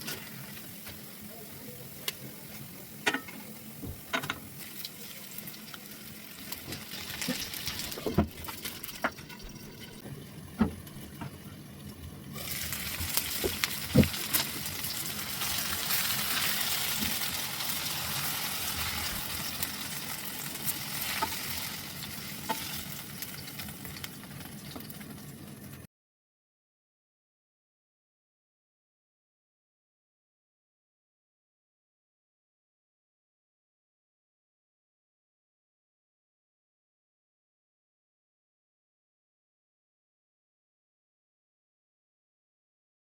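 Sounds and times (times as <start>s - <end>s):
food sizzling in a pan: 0.0s - 25.9s.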